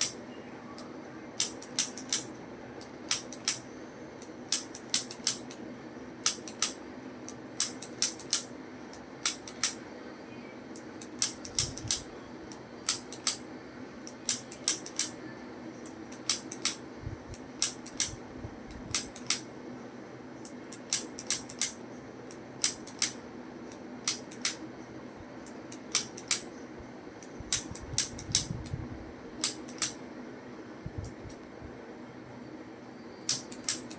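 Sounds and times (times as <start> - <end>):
steady low hum: 0.0 - 33.9
sharp clicks: 29.4 - 30.0, 33.2 - 33.9.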